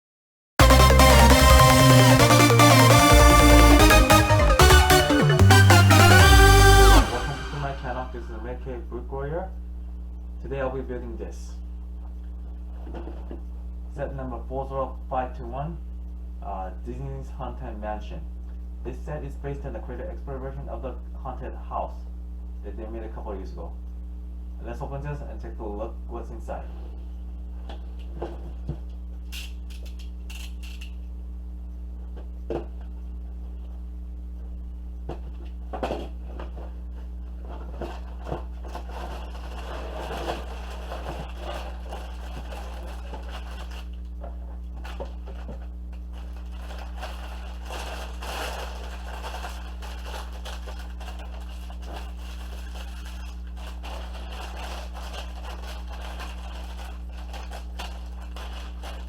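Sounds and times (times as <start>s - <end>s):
low electrical hum: 7.6s - 59.0s
packaging rustling and crinkling: 37.6s - 44.0s, 44.8s - 59.0s.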